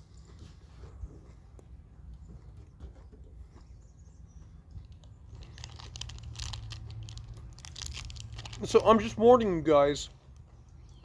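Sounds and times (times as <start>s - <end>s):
wrapper crinkling: 5.3s - 9.2s.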